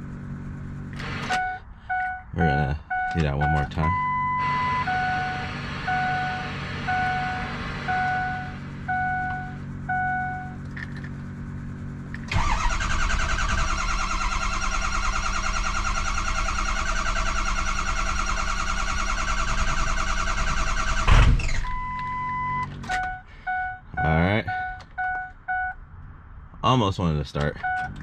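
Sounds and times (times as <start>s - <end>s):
truck warning chime: 1.0s - 10.6s, 21.7s - 25.8s
starter cranking diesel engine: 12.1s - 22.0s
engine loud burst: 12.2s - 21.6s.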